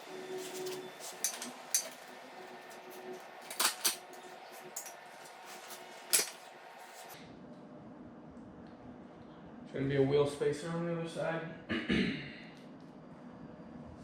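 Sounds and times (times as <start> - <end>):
metal tools clinking: 0.4 - 6.5.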